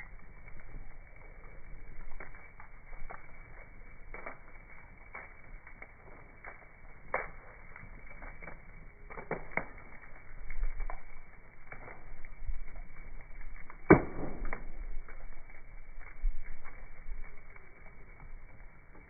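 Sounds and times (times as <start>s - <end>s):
bonfire crackling: 0.0s - 19.0s
loud pop from fire: 13.6s - 15.3s.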